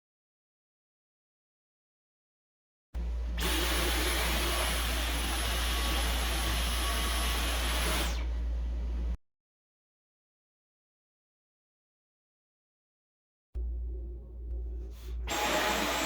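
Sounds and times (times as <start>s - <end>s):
vacuum cleaner running: 3.4s - 8.3s, 15.3s - 16.0s.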